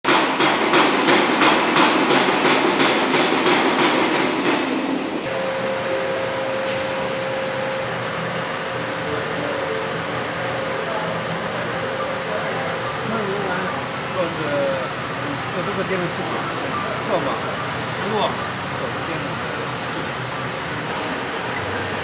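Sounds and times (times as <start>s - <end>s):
rapid regular machine knocks: 0.1s - 5.8s
machinery fan whirring: 0.1s - 22.0s.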